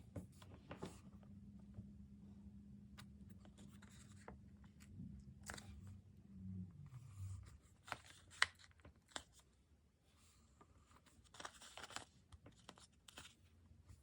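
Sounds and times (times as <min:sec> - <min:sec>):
paper rustling: 0:03.3 - 0:05.8, 0:07.5 - 0:09.5, 0:10.8 - 0:13.4.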